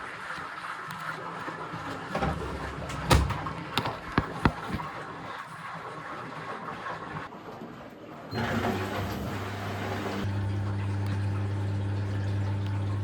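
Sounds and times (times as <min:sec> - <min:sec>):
washing machine knocks and clicks: 0:02.1 - 0:04.8.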